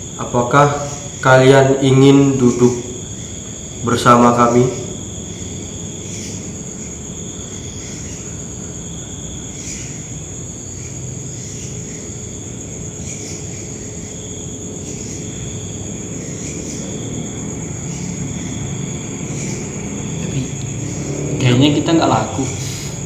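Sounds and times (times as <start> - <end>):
crickets trilling: 0.0 - 23.0
lower insect trill: 0.0 - 23.0.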